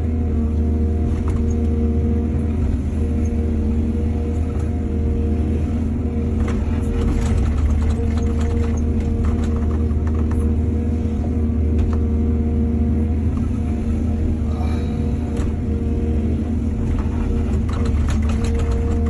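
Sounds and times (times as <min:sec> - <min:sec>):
excavator diesel engine humming: 0:00.0 - 0:19.0
sharp knocks and clatter: 0:06.4 - 0:10.5, 0:16.9 - 0:19.0.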